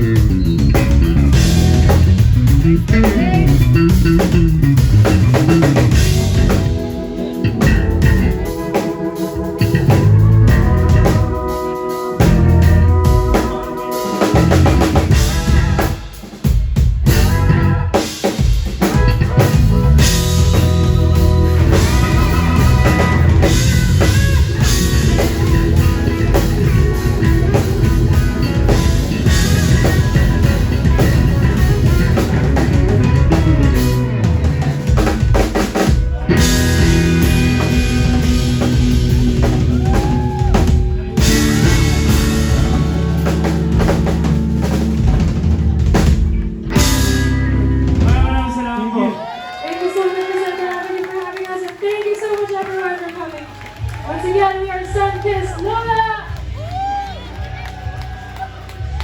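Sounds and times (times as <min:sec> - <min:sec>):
drum kit kick and snare: 0:00.0 - 0:08.7, 0:12.2 - 0:48.6
live band music: 0:00.0 - 0:49.3, 0:50.1 - 0:59.0.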